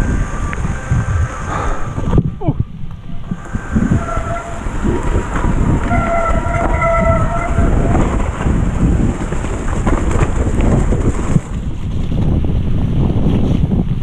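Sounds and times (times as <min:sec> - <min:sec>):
high squeal: 0:00.0 - 0:02.4, 0:03.0 - 0:09.0
wind noise on microphone: 0:00.0 - 0:14.0
mountain bike rattling over trail: 0:03.2 - 0:13.8.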